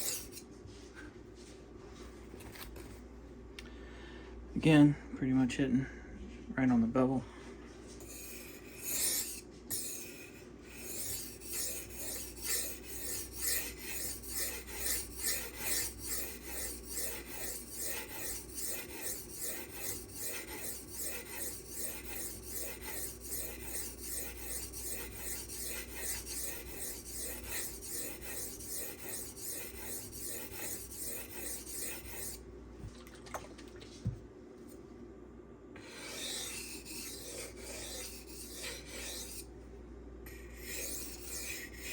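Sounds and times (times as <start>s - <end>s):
knife scraping on sharpening stone: 0.0s - 0.4s, 8.0s - 32.4s, 35.8s - 39.5s, 40.3s - 41.9s.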